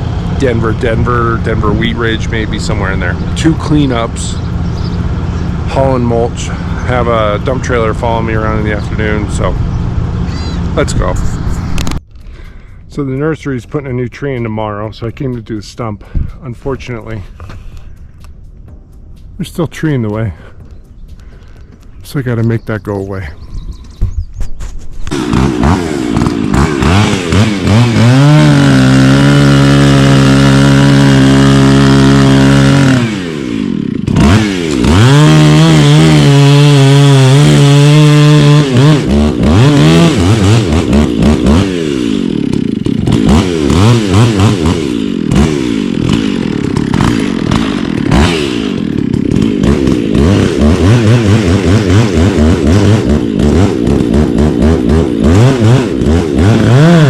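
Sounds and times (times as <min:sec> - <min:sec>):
chainsaw cutting tree: 0:00.0 - 0:12.0, 0:25.0 - 0:57.0.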